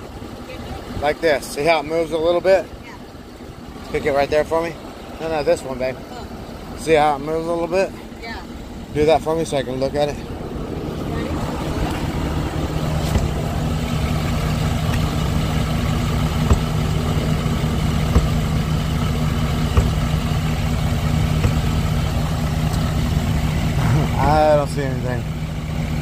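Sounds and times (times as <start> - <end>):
truck engine idling: 0.0 - 26.0
short sharp knocks: 16.4 - 16.9, 18.0 - 18.6, 19.7 - 20.2, 21.4 - 21.8.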